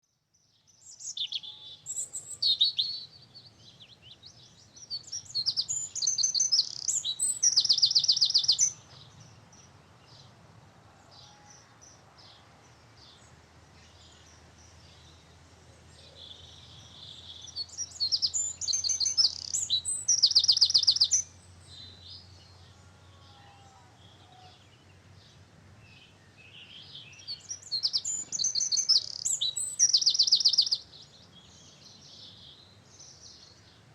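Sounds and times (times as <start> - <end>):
songbird trilling: 0.8 - 9.0, 16.2 - 22.6, 25.9 - 32.4.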